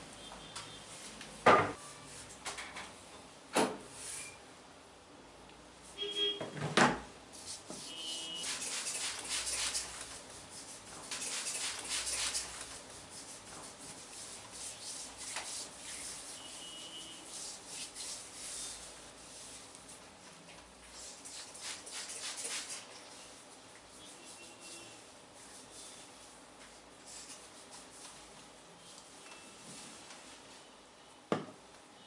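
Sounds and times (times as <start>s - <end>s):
massage rubbing on skin: 7.4s - 20.1s, 20.8s - 28.4s.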